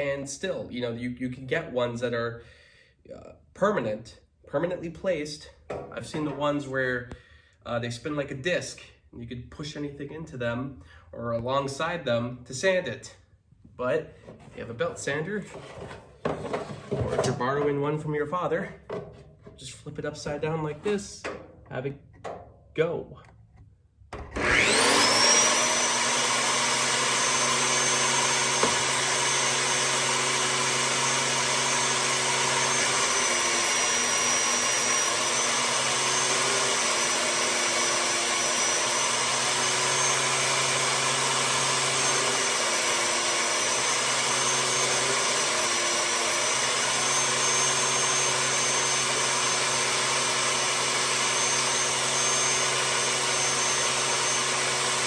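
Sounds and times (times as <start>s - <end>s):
belt sander motor whine: 24.2s - 55.0s.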